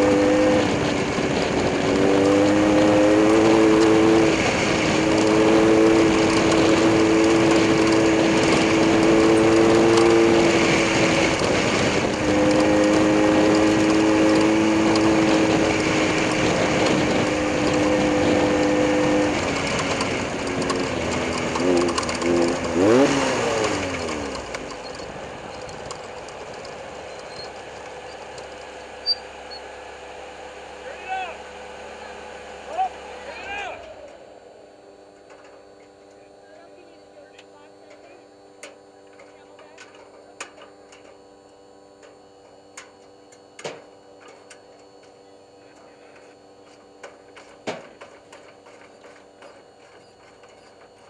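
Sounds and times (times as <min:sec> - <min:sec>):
racing engines at high speed: 0:00.0 - 0:51.0.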